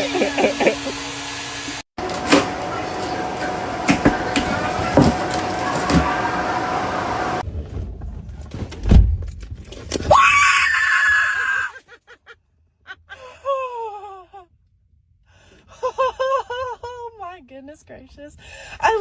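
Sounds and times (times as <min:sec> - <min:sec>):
thud: 0:07.9 - 0:09.5
person crying out: 0:10.1 - 0:11.8
person screaming: 0:10.1 - 0:11.8.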